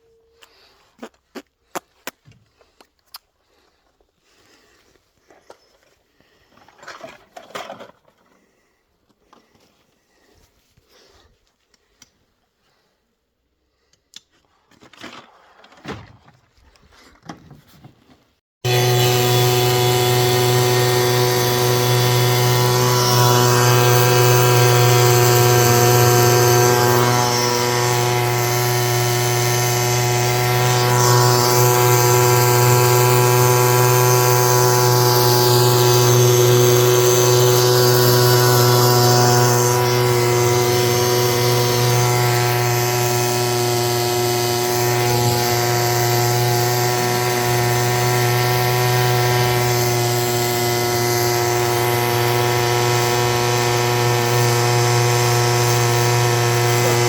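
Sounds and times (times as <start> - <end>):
steady mechanical drone: 18.7 - 57.0.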